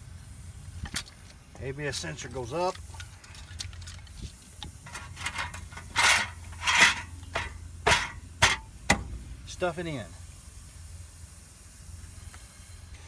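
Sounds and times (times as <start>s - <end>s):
metal parts scraping and clinking: 4.8s - 8.7s.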